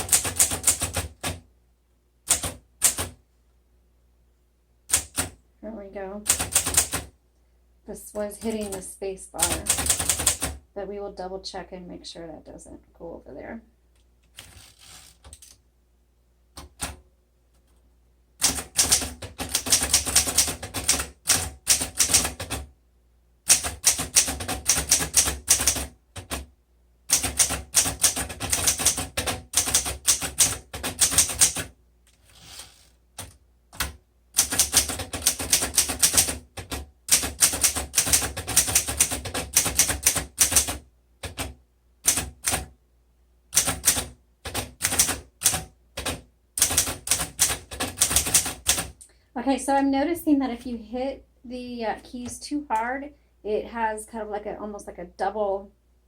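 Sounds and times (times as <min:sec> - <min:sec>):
typewriter keystrokes: 0:00.0 - 0:01.4, 0:02.3 - 0:03.1, 0:06.3 - 0:07.0, 0:18.4 - 0:22.6, 0:23.5 - 0:26.4, 0:27.1 - 0:31.7, 0:33.2 - 0:41.5, 0:43.6 - 0:49.0.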